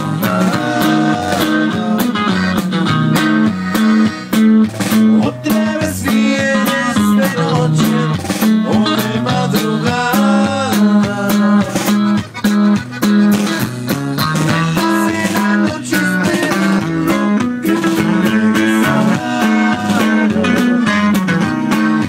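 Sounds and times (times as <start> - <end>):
bass line: 0.0 - 22.0
guitar: 0.0 - 22.0
steady drum beat: 0.0 - 22.0.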